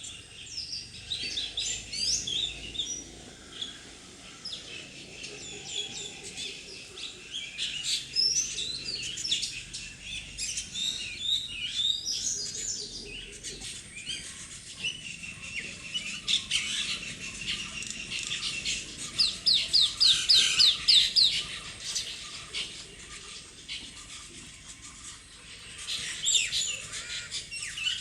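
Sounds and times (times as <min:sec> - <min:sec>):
parrots chirping and calling: 0:10.2 - 0:28.0.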